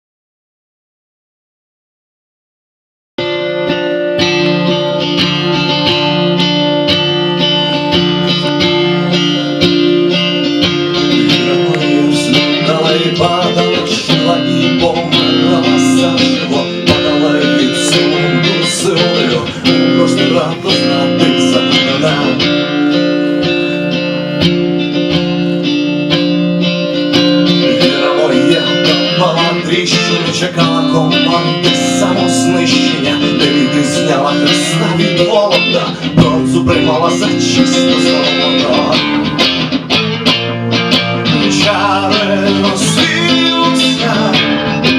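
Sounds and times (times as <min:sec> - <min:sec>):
live band guitar instrumental: 0:03.2 - 0:44.9.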